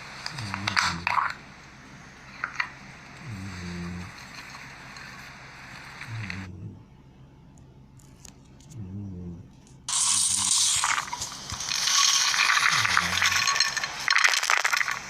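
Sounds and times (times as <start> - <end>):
loud crackling crunching noise: 0.0 - 1.4, 9.9 - 15.0.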